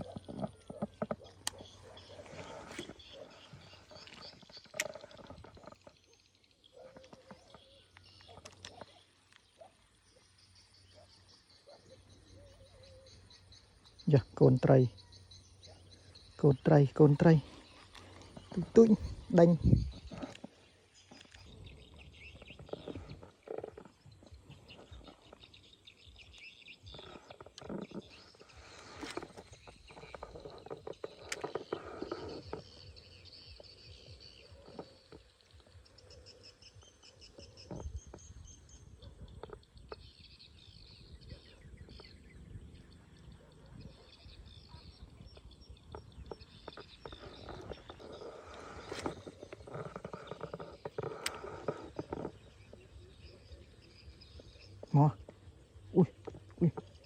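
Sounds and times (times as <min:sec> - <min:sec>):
small knocks and rustles: 0:00.0 - 0:06.1, 0:45.4 - 0:53.0
birds chirping: 0:00.0 - 0:57.0
insects: 0:00.0 - 0:57.0.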